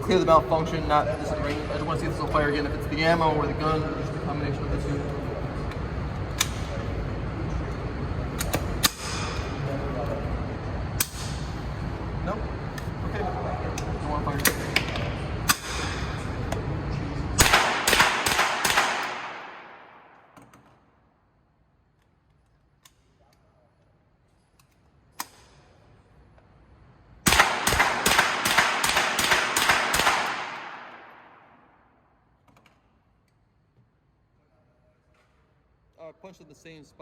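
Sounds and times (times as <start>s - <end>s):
rifle shots with echo: 17.4s - 20.4s, 27.2s - 31.7s.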